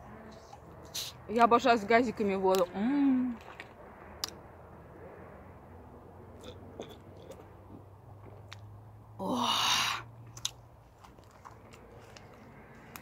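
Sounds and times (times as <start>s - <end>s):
wet mouth clicks: 6.4s - 7.4s, 10.4s - 10.6s.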